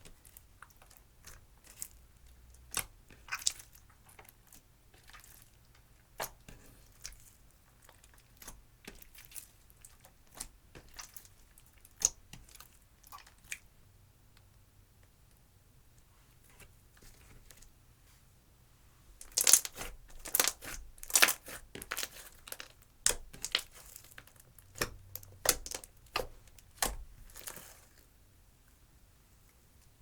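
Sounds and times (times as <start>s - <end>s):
slime squishing by hand: 0.0s - 13.7s, 19.2s - 28.1s.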